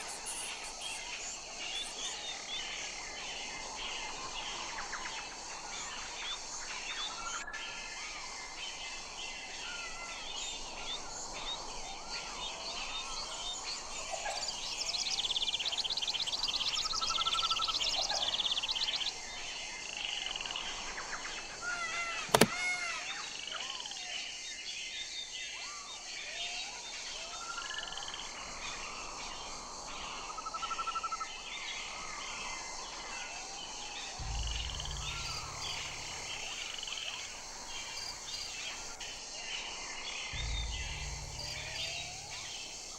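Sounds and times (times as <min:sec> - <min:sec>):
sharp click: 0:22.3 - 0:22.9, 0:34.2 - 0:39.1, 0:40.4 - 0:42.9
low rumble: 0:34.2 - 0:39.1, 0:40.4 - 0:42.9.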